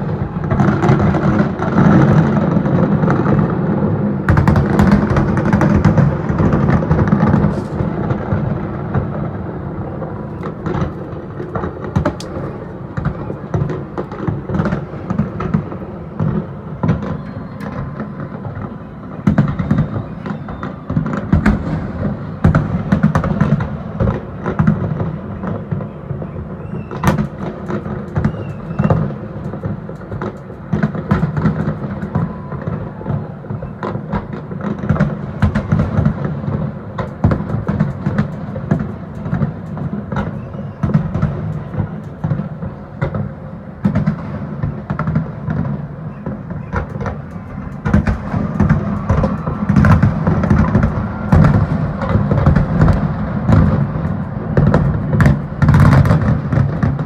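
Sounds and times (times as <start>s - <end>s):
fireworks bangs and crackles: 0.0s - 57.0s.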